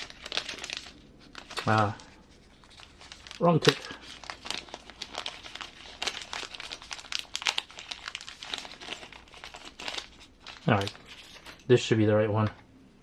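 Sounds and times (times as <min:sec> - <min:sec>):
plastic crinkling: 0:00.0 - 0:11.8.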